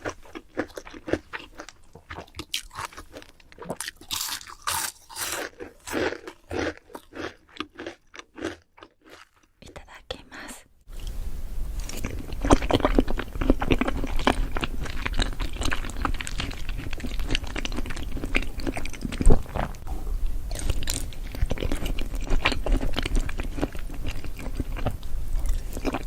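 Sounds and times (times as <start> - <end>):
person chewing crunchy food: 0.0 - 9.6, 11.8 - 26.0.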